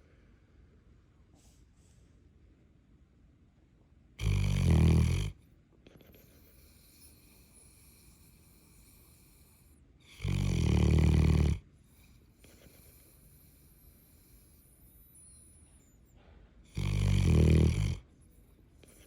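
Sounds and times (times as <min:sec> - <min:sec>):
dog snoring loudly: 0:04.2 - 0:05.4, 0:06.2 - 0:14.7, 0:16.7 - 0:18.1
faint breathing: 0:05.2 - 0:10.6, 0:11.3 - 0:19.0.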